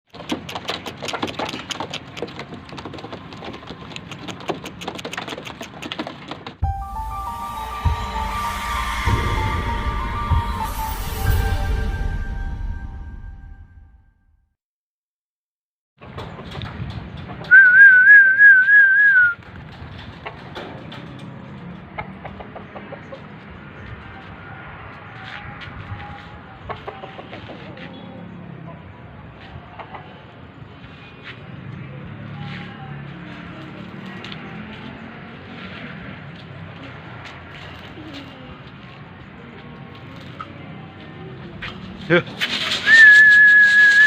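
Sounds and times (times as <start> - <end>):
pigeons pecking corn: 0.1 - 6.6
loud warbling whistle: 17.5 - 19.4, 42.8 - 44.0.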